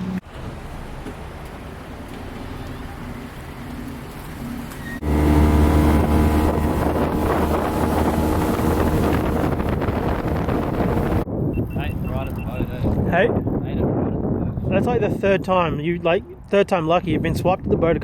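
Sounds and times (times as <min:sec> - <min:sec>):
motorboat engine running: 0:04.9 - 0:11.2
wind buffeting microphone: 0:05.0 - 0:18.0.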